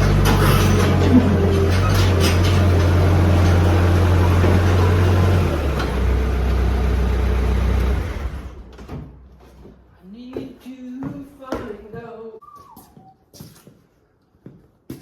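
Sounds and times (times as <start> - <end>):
skid steer engine running: 0.0 - 8.8.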